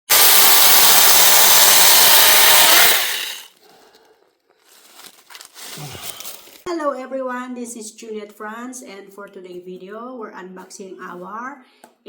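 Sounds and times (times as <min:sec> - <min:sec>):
chainsaw running: 0:00.1 - 0:03.5.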